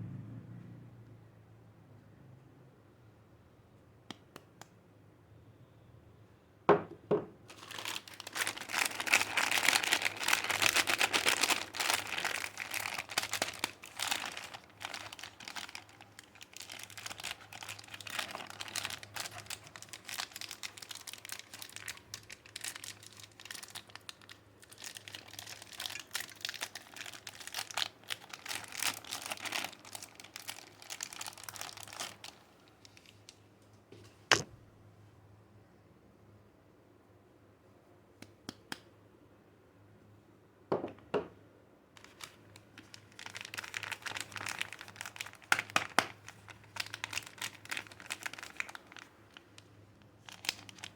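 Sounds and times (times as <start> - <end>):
wrapper crinkling and tearing: 7.5 - 33.3, 42.0 - 50.9.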